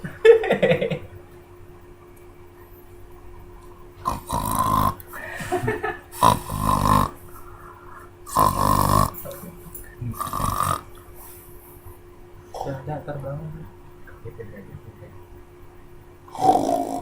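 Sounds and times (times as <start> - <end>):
man snoring heavily: 4.0 - 7.3, 8.2 - 9.4, 10.1 - 10.9, 16.3 - 17.0
soft breathing: 7.2 - 8.2.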